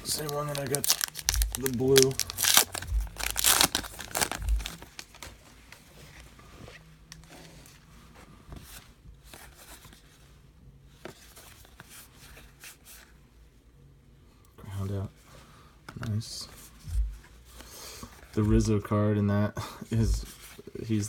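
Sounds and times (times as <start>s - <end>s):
wrapper crinkling and tearing: 0.0s - 5.4s.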